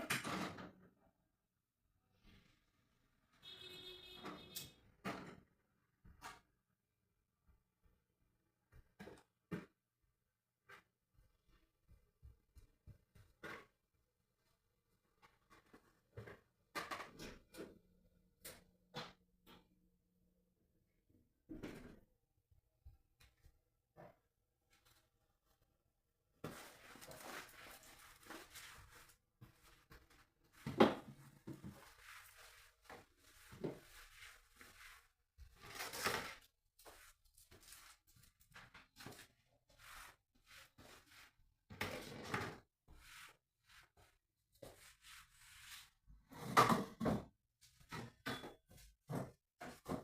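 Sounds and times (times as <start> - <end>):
objects scraping and knocking: 26.4 - 50.0.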